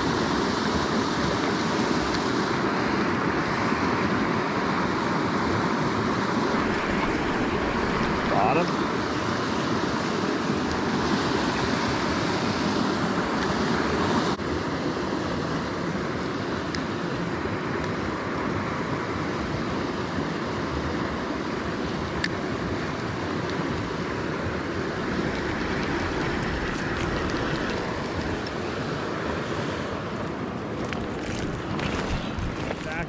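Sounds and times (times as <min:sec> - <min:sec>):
river water rushing over rocks: 0:00.0 - 0:33.0
wind on microphone: 0:06.0 - 0:14.4, 0:23.2 - 0:33.0.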